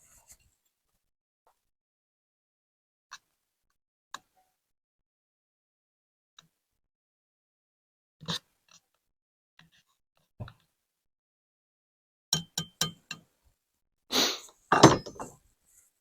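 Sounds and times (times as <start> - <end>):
objects knocking and scraping: 14.7 - 15.4.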